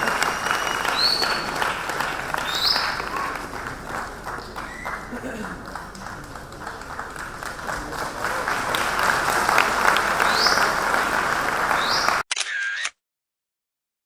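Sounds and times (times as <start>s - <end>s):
audience applauding: 0.0s - 12.2s
rising whistles: 0.1s - 1.5s.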